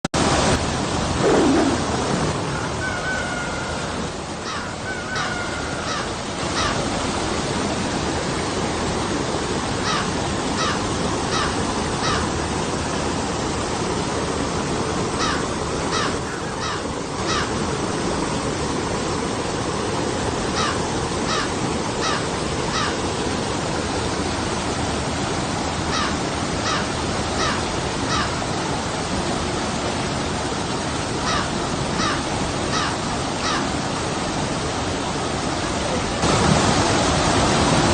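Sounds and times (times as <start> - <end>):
river water rushing over rocks: 0.2 - 37.9
bird calling: 1.2 - 6.8, 9.8 - 12.4, 15.2 - 17.6, 20.5 - 23.1, 25.9 - 28.4, 31.2 - 33.7.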